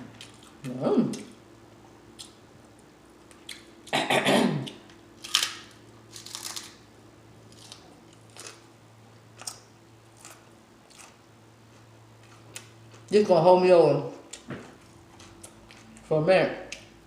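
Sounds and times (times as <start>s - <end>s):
food crunch: 4.7s - 8.7s, 9.3s - 13.2s.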